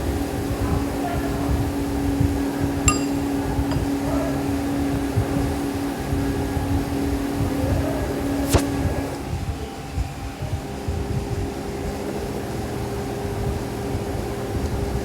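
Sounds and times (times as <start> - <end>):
low machine hum: 0.0 - 15.0
light ringing clink: 2.9 - 4.0.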